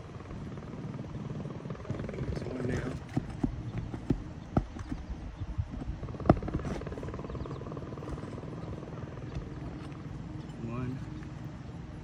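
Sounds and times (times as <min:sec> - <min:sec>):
roofing tool clicks and knocks: 0:01.8 - 0:05.1, 0:05.7 - 0:10.6.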